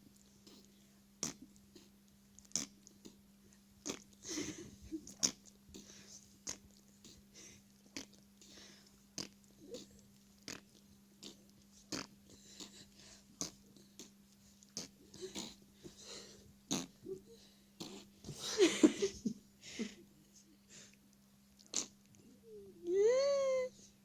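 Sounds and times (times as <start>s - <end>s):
steady low hum: 0.0s - 24.0s
wet mouth smacking and clicking: 0.2s - 3.2s, 3.8s - 4.2s, 5.0s - 8.5s, 10.4s - 12.7s, 13.4s - 15.5s.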